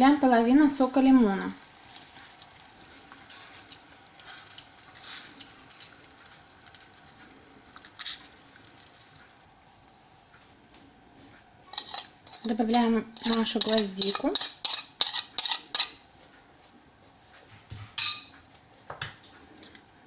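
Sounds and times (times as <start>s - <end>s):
juice dripping into syrup: 1.0s - 10.1s.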